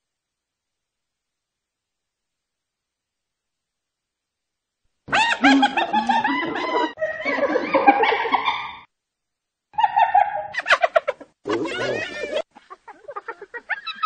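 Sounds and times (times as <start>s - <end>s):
hyena laughing: 5.1s - 8.8s, 9.8s - 14.0s.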